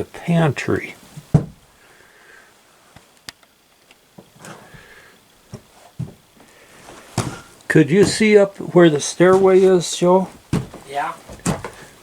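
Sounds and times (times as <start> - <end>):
floorboards creaking: 1.1 - 1.6, 6.8 - 11.9
footsteps on wooden floorboards: 5.5 - 6.2, 8.0 - 8.3, 9.2 - 11.8.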